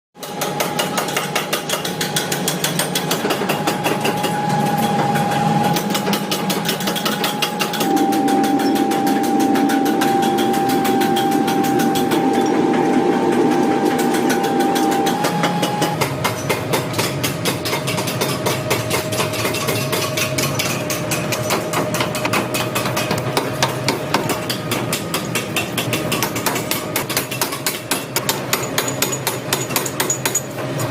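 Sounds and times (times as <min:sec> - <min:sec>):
hammer blows on metal: 0:00.2 - 0:16.6
steady machine hum: 0:02.1 - 0:16.6.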